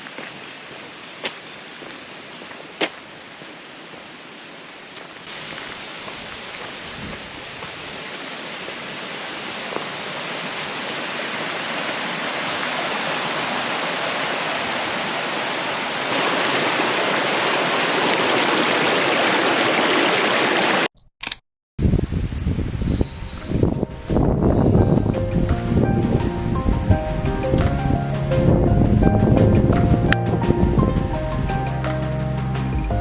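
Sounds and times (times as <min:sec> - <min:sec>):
rushing water: 0:00.0 - 0:20.9, 0:21.9 - 0:33.0.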